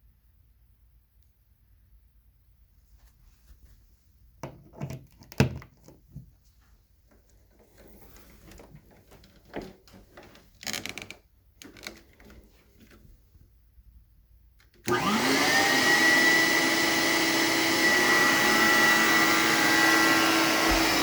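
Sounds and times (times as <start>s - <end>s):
vacuum cleaner knocking and clattering: 14.9s - 21.0s.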